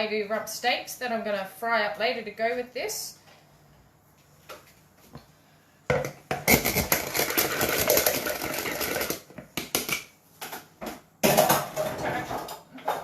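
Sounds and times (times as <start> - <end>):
dishes and utensils clattering: 11.2 - 13.0.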